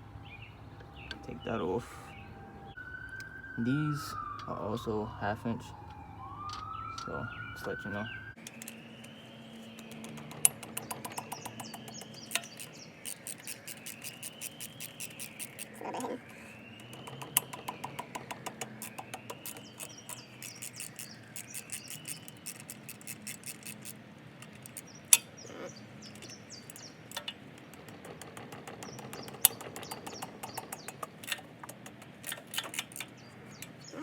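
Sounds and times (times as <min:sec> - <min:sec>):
faint rising and falling tone: 0:00.0 - 0:12.1
sharp metal clicks: 0:05.8 - 0:07.8, 0:08.4 - 0:34.0
ratchet wrench clicking: 0:08.4 - 0:16.1, 0:16.8 - 0:33.9.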